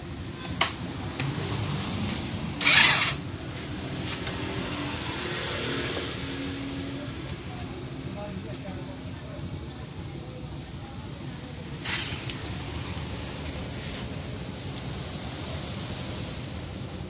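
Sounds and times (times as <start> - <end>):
steady mechanical hum: 0.0 - 17.0
loud hiss: 11.7 - 17.0.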